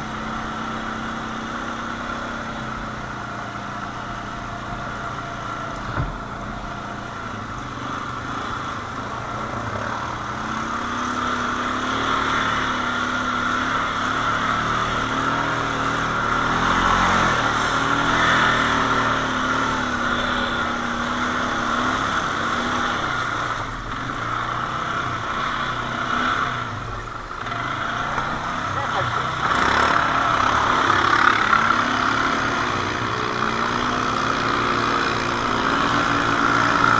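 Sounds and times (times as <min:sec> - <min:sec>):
quad bike engine running: 0:00.0 - 0:36.9.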